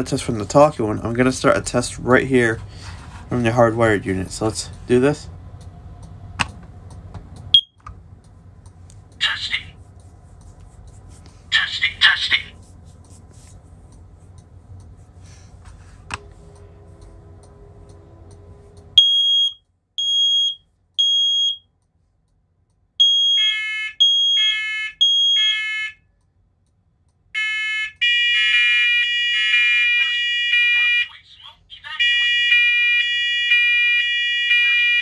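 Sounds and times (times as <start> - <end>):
high-pitched smoke alarm beeps: 7.5 - 7.8, 19.0 - 21.7, 23.0 - 25.6
lower-pitched smoke alarm beeps: 7.5 - 7.8, 18.9 - 21.7, 23.0 - 26.0, 28.0 - 31.1.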